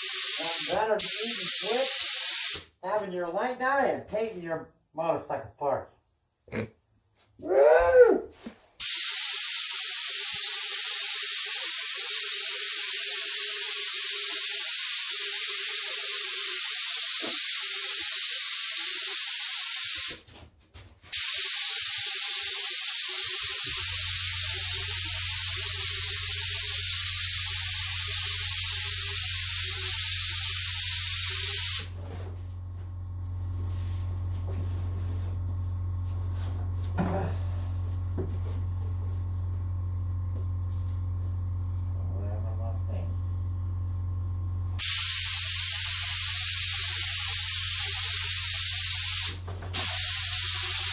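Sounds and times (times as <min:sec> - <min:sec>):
paint spray hissing: 0:00.0 - 0:02.7, 0:08.8 - 0:20.2, 0:21.1 - 0:31.9, 0:44.8 - 0:50.9
steady low hum: 0:31.9 - 0:44.8.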